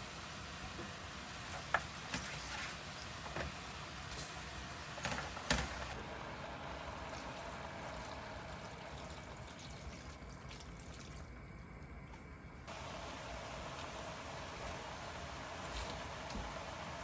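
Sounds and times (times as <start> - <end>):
liquid pouring into a pot: 7.0 - 11.4.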